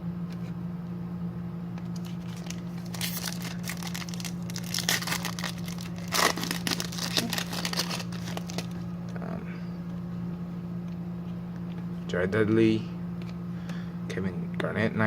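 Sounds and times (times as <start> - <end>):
steady low hum: 0.0 - 15.0
foil wrapper tearing and crinkling: 1.9 - 8.8.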